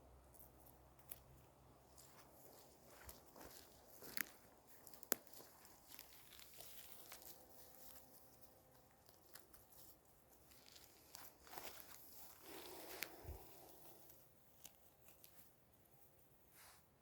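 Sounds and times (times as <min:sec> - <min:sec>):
faint rustling and crackling: 0:00.0 - 0:17.0.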